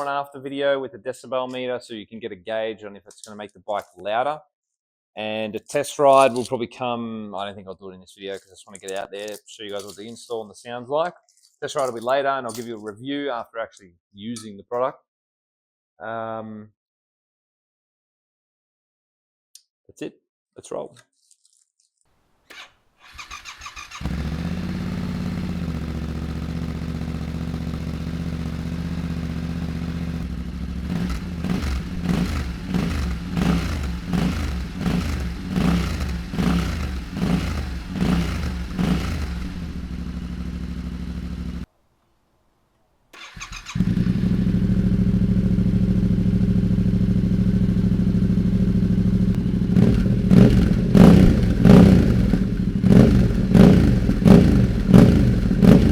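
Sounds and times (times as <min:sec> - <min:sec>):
motorcycle engine revving: 0:23.2 - 0:41.7, 0:43.2 - 0:55.9.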